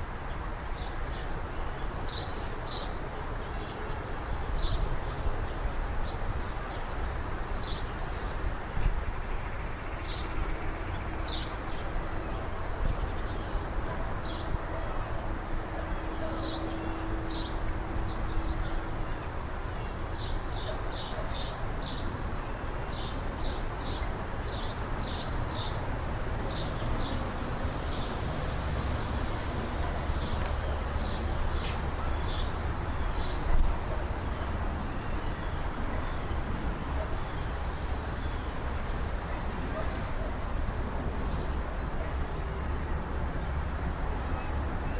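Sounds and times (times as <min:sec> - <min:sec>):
small birds chirping: 0:29.8 - 0:33.7.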